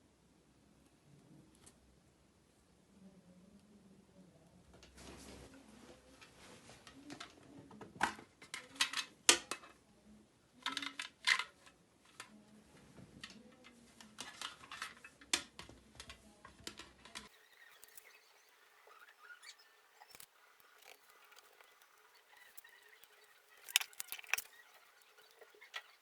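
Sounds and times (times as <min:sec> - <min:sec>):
small items clicking and rustling: 0:17.3 - 0:26.0.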